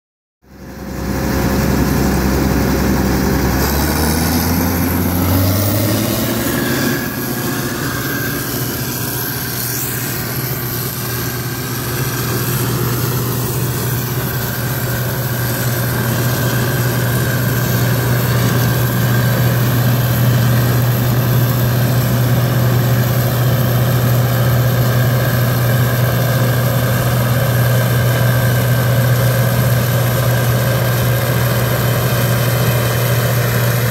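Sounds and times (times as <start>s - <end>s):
harvester engine running: 0.4s - 33.9s.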